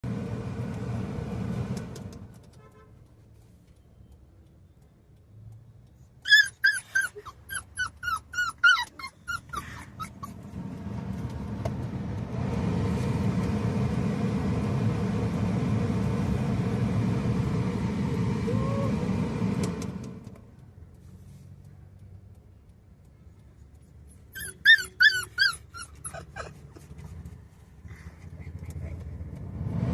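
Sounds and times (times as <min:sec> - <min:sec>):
car engine and air conditioner hum: 0:00.0 - 0:29.9
puppy whimpering and yelping: 0:06.2 - 0:10.6, 0:24.1 - 0:26.9.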